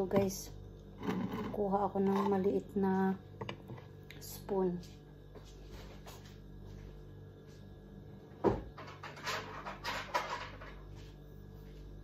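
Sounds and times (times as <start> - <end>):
spoon rattling and rustling: 8.8 - 10.8.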